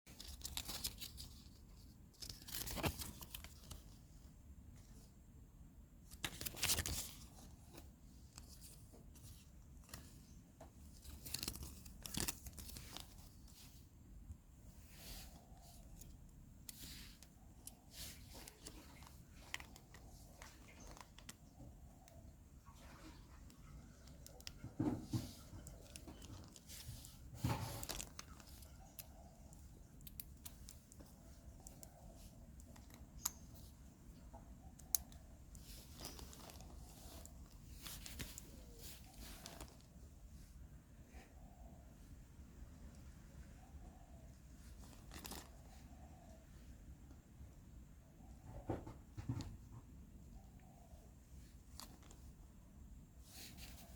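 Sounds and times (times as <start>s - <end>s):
packaging crinkling and tearing: 0.1s - 1.6s, 11.0s - 13.5s, 25.5s - 29.4s, 34.8s - 39.9s, 44.8s - 45.8s
faint handling noise: 0.1s - 53.9s.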